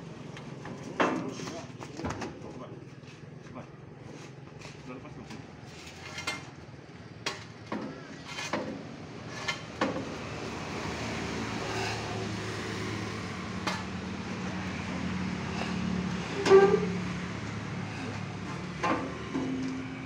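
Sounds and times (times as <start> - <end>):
vehicle engine running: 10.1 - 20.0
metal clanks and knocks: 16.2 - 17.0, 18.1 - 19.9.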